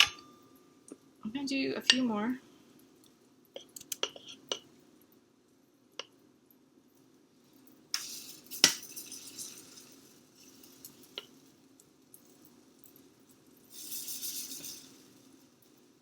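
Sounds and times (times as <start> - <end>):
batter sizzling: 7.4 - 16.0.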